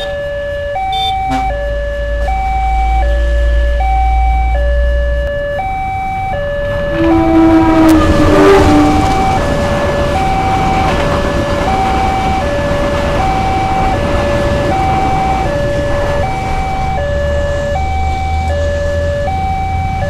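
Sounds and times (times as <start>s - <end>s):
passing traffic rumble: 0.0s - 20.0s
two-tone warning siren: 0.0s - 20.0s
low horn-like tone: 0.9s - 2.4s, 6.8s - 9.5s.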